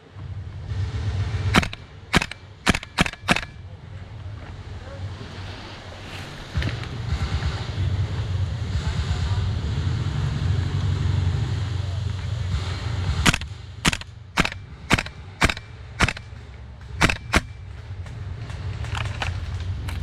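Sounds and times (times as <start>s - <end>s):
wind on microphone: 0.3s - 16.4s
airsoft rifle shots: 1.5s - 3.8s, 13.2s - 17.9s.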